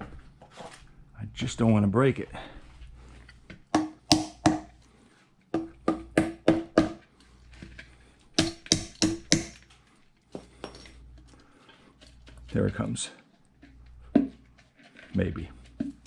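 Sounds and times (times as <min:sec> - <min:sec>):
rubber mallet knocking on housing: 0:03.8 - 0:04.7, 0:05.6 - 0:07.0, 0:08.4 - 0:09.6.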